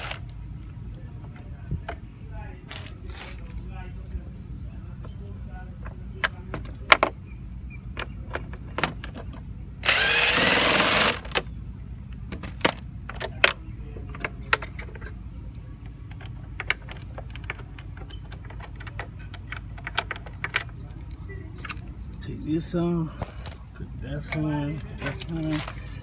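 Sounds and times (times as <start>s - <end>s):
power drill driving a screw: 0.0s - 0.2s, 9.8s - 11.3s
tools and metal parts clinking: 12.4s - 21.9s, 24.2s - 26.0s.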